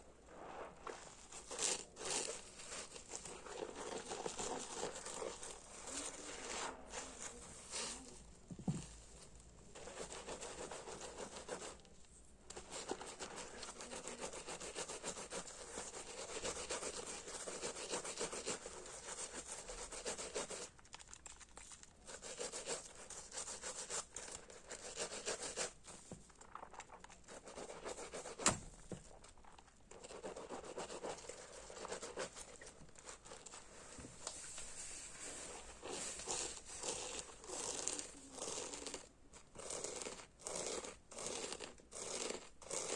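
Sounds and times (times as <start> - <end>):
soapy sponge foam crackling: 0.0 - 11.7, 30.2 - 39.0.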